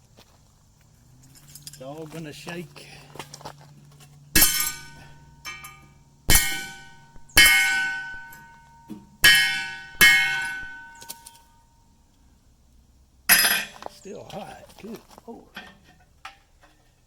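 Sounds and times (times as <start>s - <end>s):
hammer ringing on thin steel: 4.4s - 11.7s, 13.3s - 13.8s.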